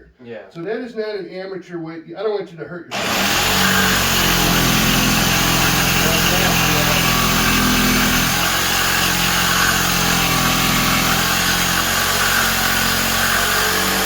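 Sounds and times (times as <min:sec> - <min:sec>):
power saw cutting wood: 0:02.9 - 0:14.0.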